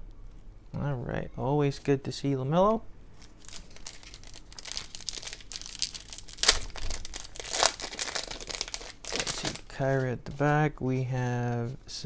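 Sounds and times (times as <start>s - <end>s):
plastic wrapper crinkling: 3.1s - 9.9s.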